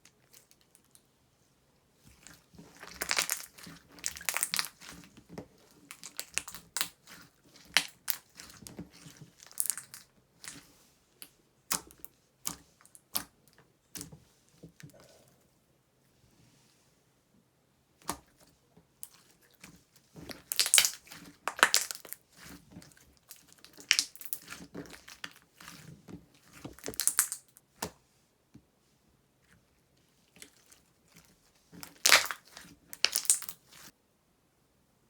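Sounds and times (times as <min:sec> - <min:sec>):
slime crackling and popping: 0:02.8 - 0:05.0, 0:05.9 - 0:08.6, 0:09.4 - 0:10.6, 0:20.3 - 0:22.2, 0:23.3 - 0:25.7, 0:26.7 - 0:27.5, 0:31.8 - 0:33.9.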